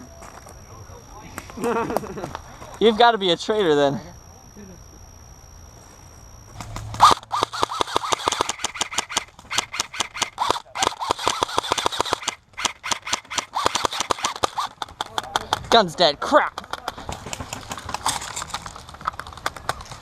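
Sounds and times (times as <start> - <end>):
airsoft rifle firing full-auto: 6.6 - 14.8.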